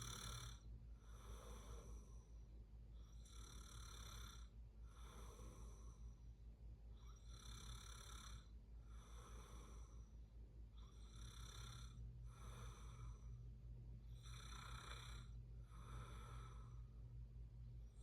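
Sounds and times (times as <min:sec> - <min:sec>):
person snoring faintly: 0:00.0 - 0:02.3, 0:14.1 - 0:16.8
steady low hum: 0:00.0 - 0:18.0.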